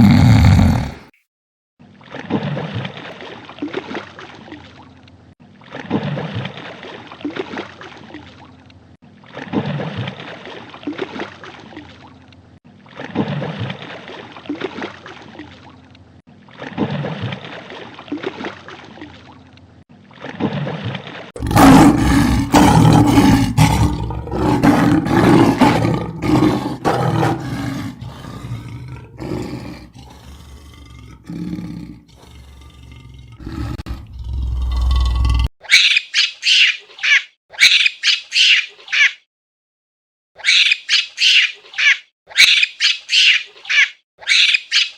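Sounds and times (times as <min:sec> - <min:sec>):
large animal roaring: 0:00.0 - 0:01.1, 0:21.4 - 0:35.5
deep pitched animal calls: 0:40.4 - 0:44.9.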